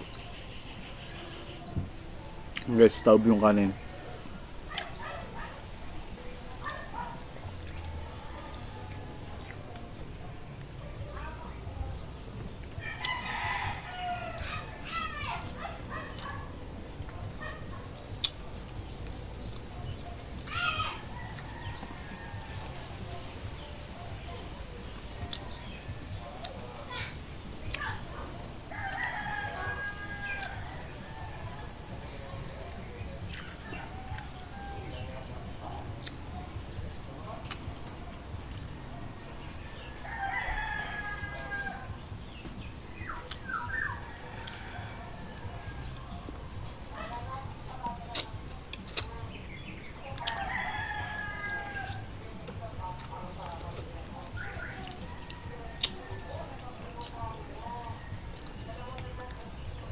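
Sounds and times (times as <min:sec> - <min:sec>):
rural background noise: 0:00.0 - 0:59.9
rooster crowing: 0:12.8 - 0:16.6, 0:20.5 - 0:23.6, 0:28.6 - 0:32.3, 0:33.5 - 0:35.3, 0:39.5 - 0:42.0, 0:50.1 - 0:52.1.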